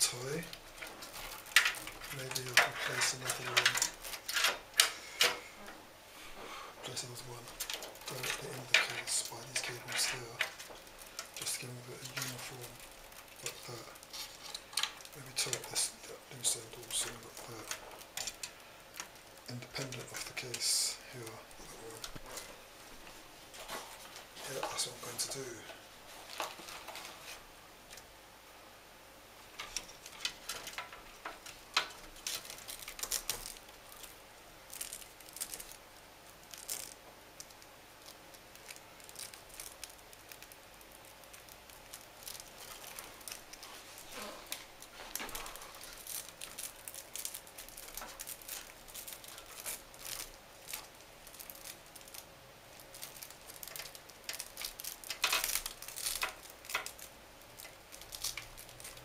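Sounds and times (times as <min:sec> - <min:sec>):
cables rustling and scraping: 0:00.0 - 0:28.1, 0:29.4 - 0:59.0
velcro cable ties fastening: 0:31.7 - 0:35.8, 0:36.5 - 0:59.0.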